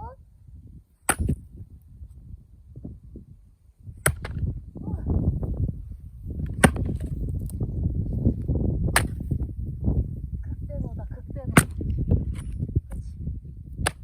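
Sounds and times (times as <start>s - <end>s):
axe striking firewood: 1.0s - 1.5s, 4.0s - 4.6s, 6.4s - 7.3s, 8.8s - 9.4s, 11.5s - 13.0s, 13.8s - 14.0s.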